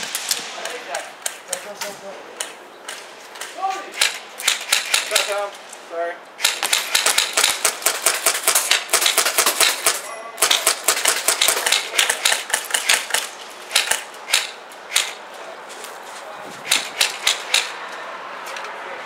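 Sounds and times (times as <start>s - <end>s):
airsoft guns firing: 3.4s - 5.4s, 6.4s - 15.2s, 16.6s - 17.8s.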